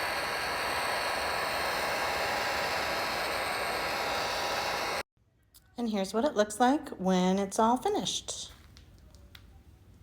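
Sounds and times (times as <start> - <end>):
heat gun fan hissing: 0.0 - 5.1.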